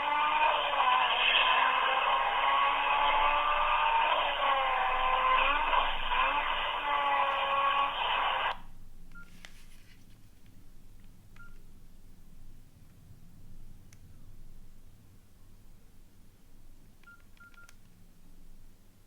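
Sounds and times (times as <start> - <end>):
phone speaker gliding tones: 0.0 - 8.6.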